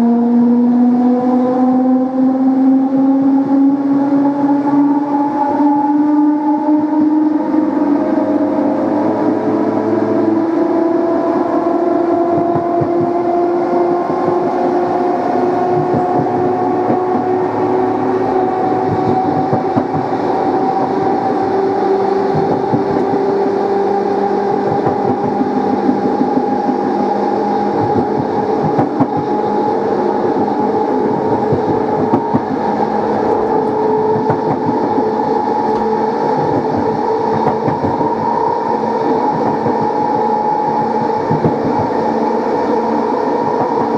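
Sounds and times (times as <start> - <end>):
train traction motors whining: 0.0 - 43.9
wheels clattering over rail joints: 12.0 - 21.7.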